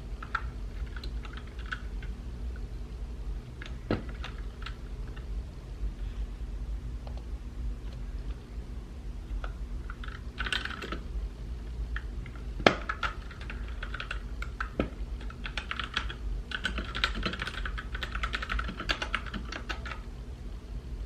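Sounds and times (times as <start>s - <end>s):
mechanical keyboard typing: 0.2s - 2.0s, 3.6s - 5.2s, 9.9s - 11.0s, 12.0s - 20.1s.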